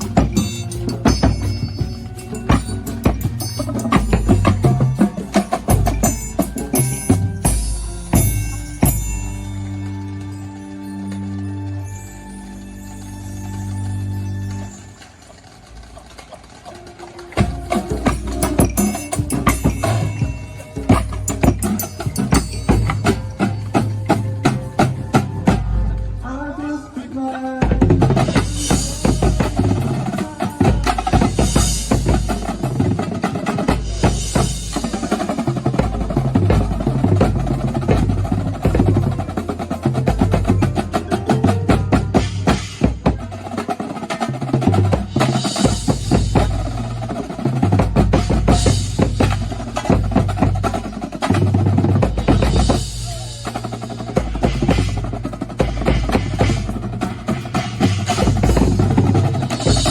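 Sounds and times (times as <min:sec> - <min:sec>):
pitched bass drums: 0:00.0 - 0:09.4, 0:27.6 - 0:43.4, 0:44.6 - 0:59.9
snare drum rolls: 0:27.7 - 0:59.9.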